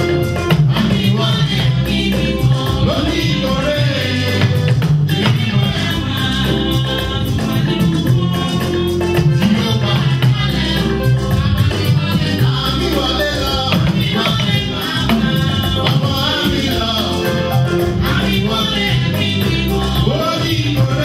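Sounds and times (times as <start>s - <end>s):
upbeat music with singing: 0.0s - 21.0s.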